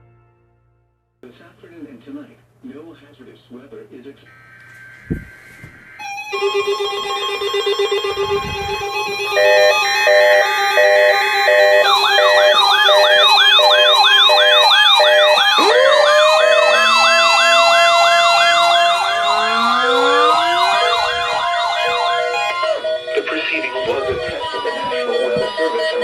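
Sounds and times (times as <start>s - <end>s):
electronic siren yelp and wail: 4.4s - 26.0s
pulsing beep: 6.6s - 16.8s, 17.9s - 23.2s.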